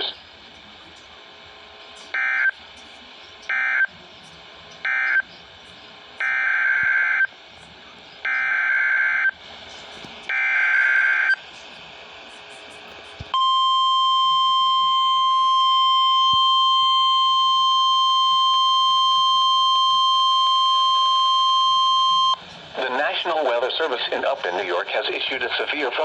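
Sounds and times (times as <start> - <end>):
steady high alarm tone: 13.3 - 22.4.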